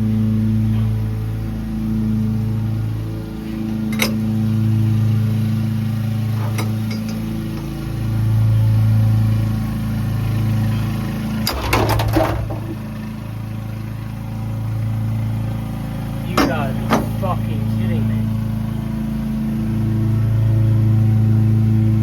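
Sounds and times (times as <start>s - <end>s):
low engine-like hum: 0.0s - 22.0s
clicks and knocks: 3.9s - 4.2s, 6.4s - 7.8s, 11.4s - 13.0s, 16.4s - 17.2s.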